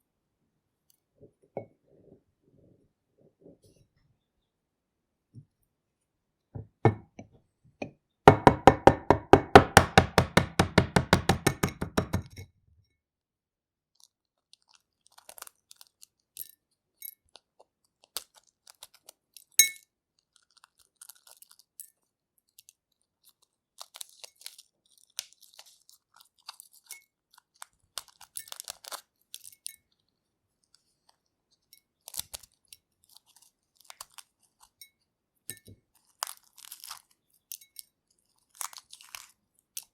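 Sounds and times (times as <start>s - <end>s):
egg tapping on glass bowl: 6.6s - 12.4s
eggshell peeling crackles: 14.0s - 16.4s, 17.3s - 19.6s, 20.2s - 21.8s, 22.4s - 31.3s, 31.9s - 34.8s, 35.8s - 39.9s.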